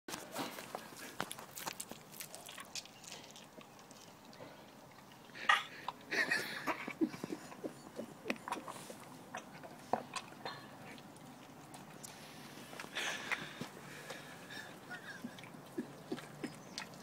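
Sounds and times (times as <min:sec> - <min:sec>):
dog chewing meat: 0:00.8 - 0:05.4, 0:07.2 - 0:13.8, 0:15.3 - 0:17.0.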